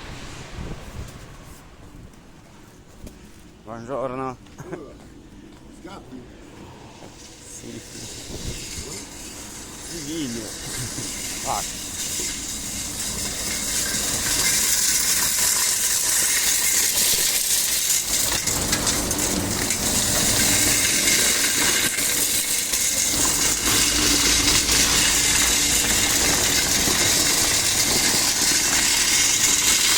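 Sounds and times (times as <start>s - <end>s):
industrial vacuum running: 6.3s - 29.9s.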